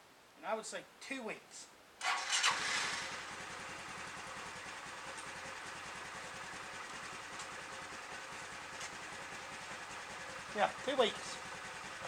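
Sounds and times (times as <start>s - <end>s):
electric starter cranking: 2.0s - 3.2s
scooter engine idling: 2.1s - 12.0s.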